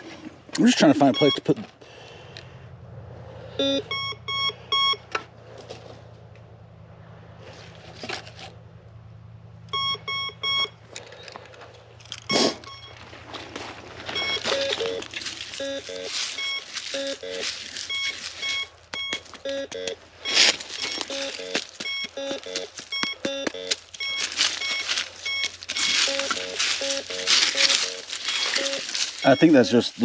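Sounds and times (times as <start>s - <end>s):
metal detector beeping: 0.9s - 1.6s, 3.6s - 5.2s, 9.7s - 11.2s, 12.2s - 13.1s, 14.0s - 30.0s.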